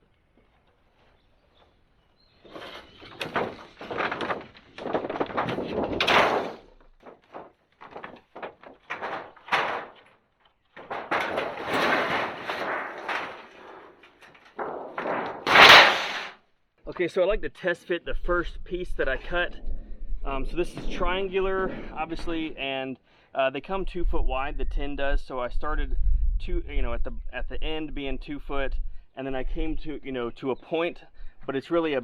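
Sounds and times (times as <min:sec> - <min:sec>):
roofing tin rattling and scraping: 0:02.4 - 0:16.4.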